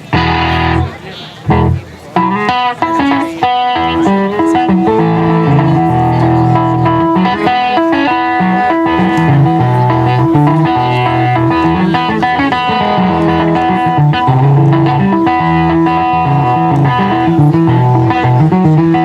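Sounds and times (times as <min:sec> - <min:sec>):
amplified banjo playing: 0:00.0 - 0:19.0.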